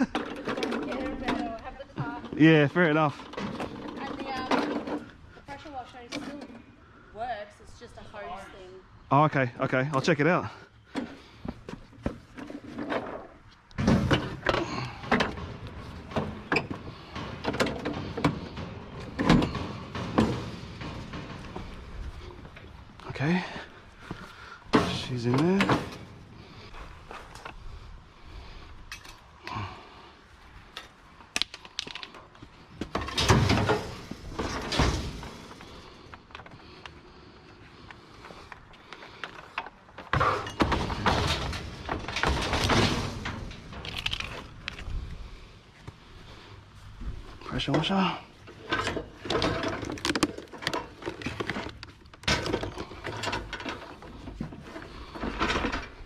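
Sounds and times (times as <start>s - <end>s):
hard items clattering and knocking: 0.0s - 5.3s, 10.9s - 26.7s, 38.2s - 45.4s, 47.6s - 56.0s
loud bangs and scrapes: 10.9s - 28.6s, 31.6s - 56.0s.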